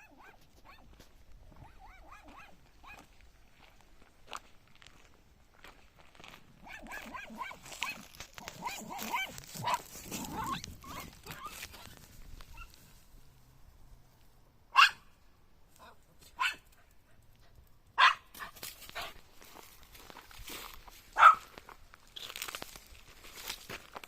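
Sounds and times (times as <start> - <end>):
puppy barking: 0.0 - 0.9, 1.6 - 3.1, 6.6 - 12.8, 14.7 - 15.1, 15.8 - 16.8, 18.0 - 19.2, 21.2 - 21.5.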